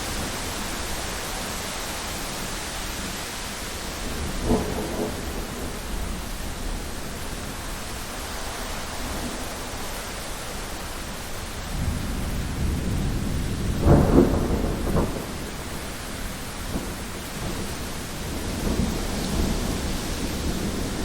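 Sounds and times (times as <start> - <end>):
steady rain: 0.0 - 21.0
thunder rumbling: 3.8 - 9.7, 11.6 - 21.0.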